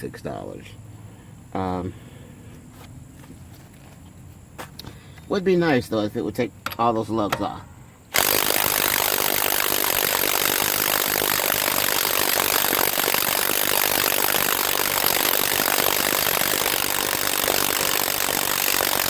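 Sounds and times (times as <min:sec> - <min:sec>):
impact wrench hammering: 0:08.1 - 0:19.0.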